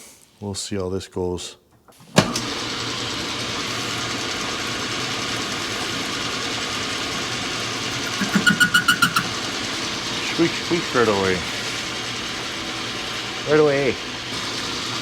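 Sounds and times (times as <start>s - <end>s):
metal lathe running: 2.4s - 15.0s
parting blade squeaking: 7.8s - 9.5s.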